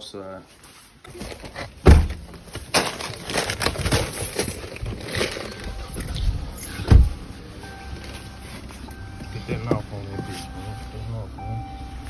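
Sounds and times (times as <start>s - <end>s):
rustling: 0.5s - 9.2s
soft knocks and bumps: 6.0s - 7.3s.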